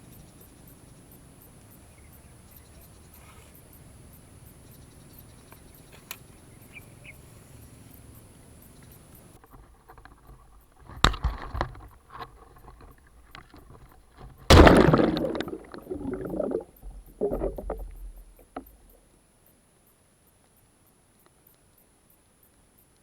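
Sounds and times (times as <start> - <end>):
water sloshing and splashing: 12.4 - 19.0
loud splash in water: 14.4 - 18.9.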